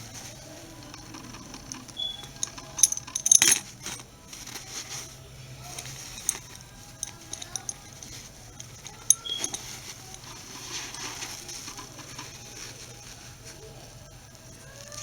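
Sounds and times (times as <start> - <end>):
faint rustling: 0.0 - 15.0
belt buckle click: 2.0 - 4.0, 6.2 - 10.3.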